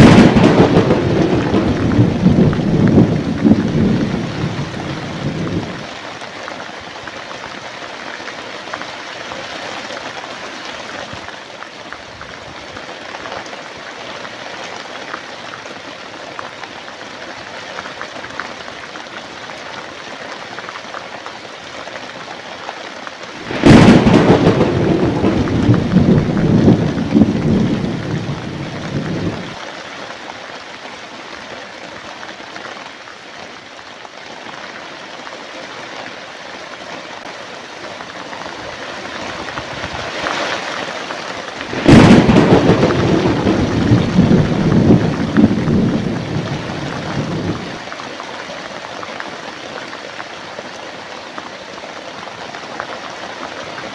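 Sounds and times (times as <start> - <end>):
thunder cracking and rumbling: 0.0 - 5.9, 23.4 - 29.6, 41.6 - 47.8
steady rain: 0.0 - 53.9.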